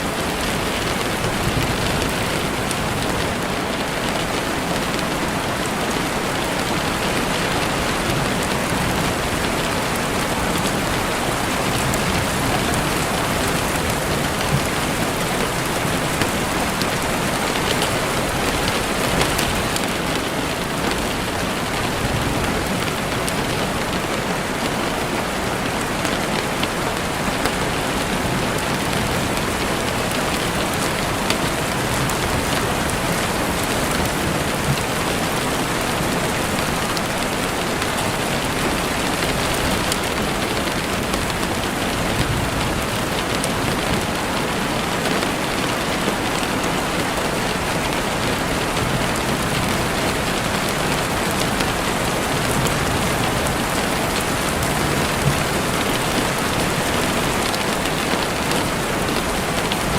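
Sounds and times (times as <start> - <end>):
campfire crackling: 0.0 - 24.7
rain falling: 0.0 - 59.9.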